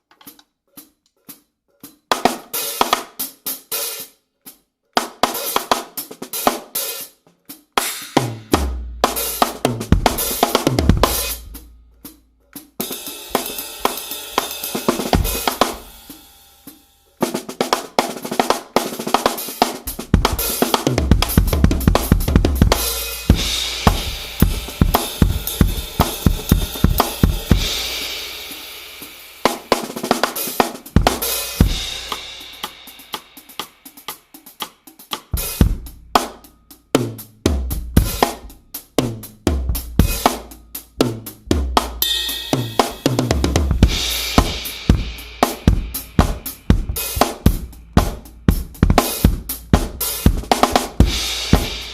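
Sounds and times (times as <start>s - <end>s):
snare and tom strokes: 0.2s - 51.9s
washing cymbals: 6.4s - 51.9s
deep ringing bass drum: 8.5s - 12.0s, 19.9s - 28.0s, 41.4s - 51.9s.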